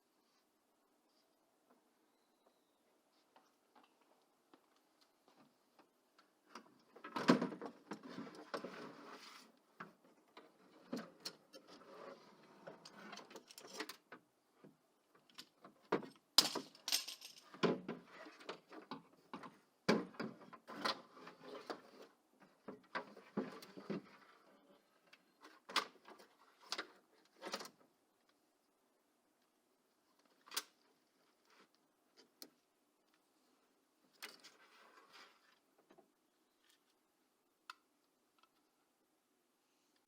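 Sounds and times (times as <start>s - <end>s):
metallic rattling of tools: 16.4s - 17.5s.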